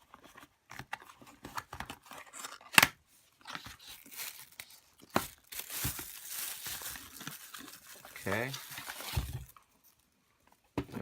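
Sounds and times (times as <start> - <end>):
packaging crinkling: 3.4 - 9.6
packaging ripping: 3.6 - 9.6.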